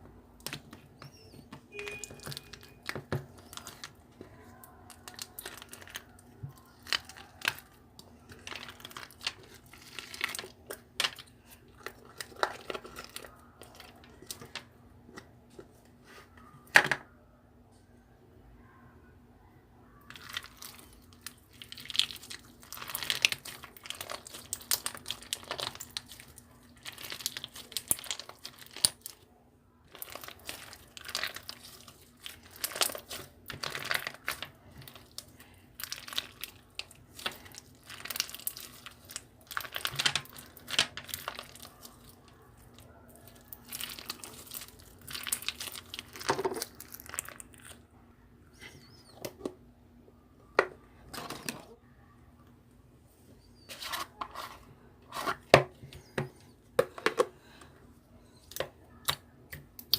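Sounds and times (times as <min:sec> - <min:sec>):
slime crackling and popping: 0:04.8 - 0:14.6, 0:20.1 - 0:29.2, 0:29.9 - 0:47.8.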